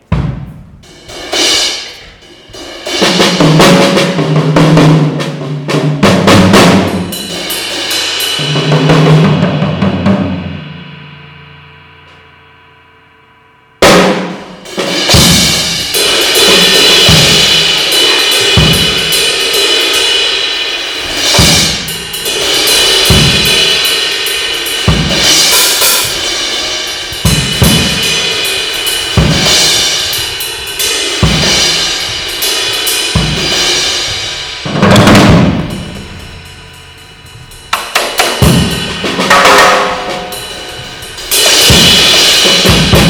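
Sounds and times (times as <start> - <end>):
bass drum hits: 0.0 - 1.1, 21.0 - 43.0
cymbals and hi-hat: 0.0 - 12.6, 13.8 - 43.0
cymbal crash: 13.8 - 43.0.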